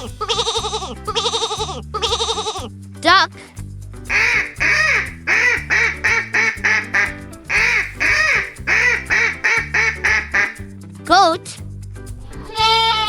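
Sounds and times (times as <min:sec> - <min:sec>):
children's music with bass line: 0:00.0 - 0:13.0
duck quacking: 0:04.1 - 0:10.6.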